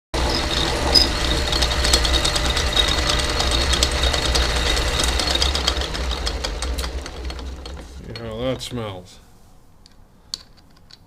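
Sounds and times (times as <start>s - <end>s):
lathe running with rattling chatter: 0.2s - 8.7s.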